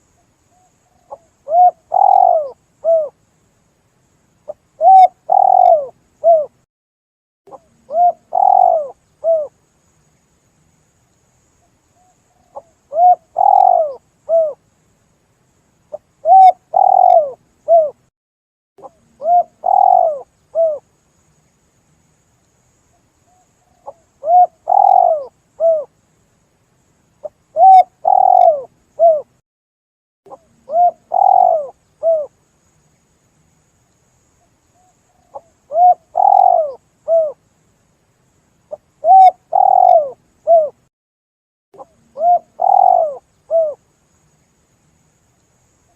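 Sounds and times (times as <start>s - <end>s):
dove cooing: 1.1s - 3.2s, 4.5s - 6.6s, 7.5s - 9.6s, 12.5s - 14.6s, 15.9s - 18.0s, 18.8s - 20.8s, 23.8s - 25.9s, 27.6s - 29.3s, 30.3s - 32.3s, 35.2s - 37.4s, 38.7s - 40.8s, 41.8s - 43.8s.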